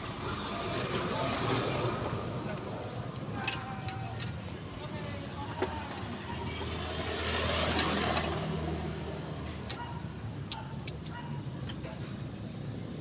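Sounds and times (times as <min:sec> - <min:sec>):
motor vehicle passing: 0:06.4 - 0:10.1.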